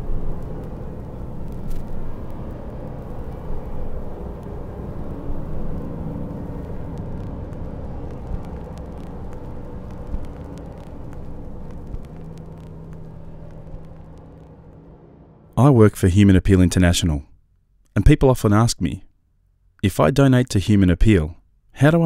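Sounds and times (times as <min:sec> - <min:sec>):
motor vehicle rumble: 0:00.0 - 0:15.6.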